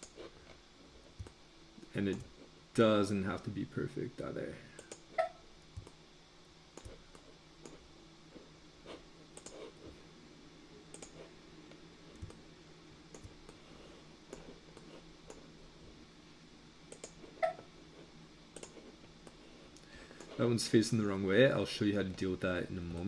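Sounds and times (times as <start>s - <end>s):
computer mouse clicks: 0.0s - 0.2s, 1.2s - 1.4s, 4.8s - 5.1s, 5.7s - 6.0s, 6.8s - 7.8s, 9.3s - 9.7s, 10.9s - 11.3s, 12.1s - 12.4s, 13.1s - 13.6s, 16.9s - 17.2s, 18.5s - 20.4s
steady low hum: 0.0s - 23.0s.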